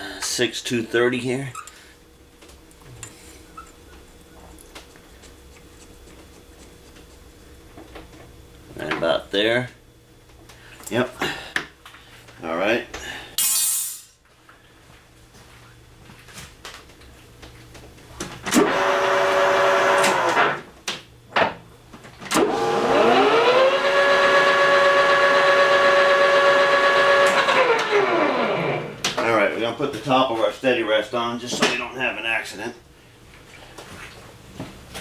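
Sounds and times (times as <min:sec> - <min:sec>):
lathe motor whine: 0:18.6 - 0:20.6, 0:22.4 - 0:29.1.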